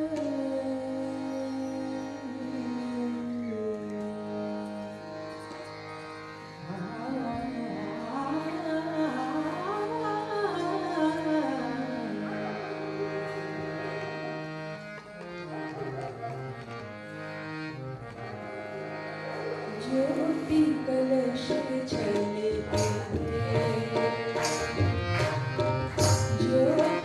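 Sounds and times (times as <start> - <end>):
classical music with drone: 0.0 - 27.0.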